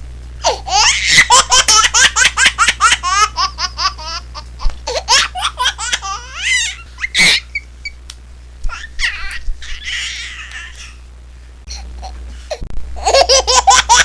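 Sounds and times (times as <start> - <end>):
low steady hum: 0.0 - 14.0
baby laughing: 0.4 - 7.7, 8.7 - 11.0, 13.0 - 14.0
baby squealing: 0.4 - 8.0, 8.7 - 11.0.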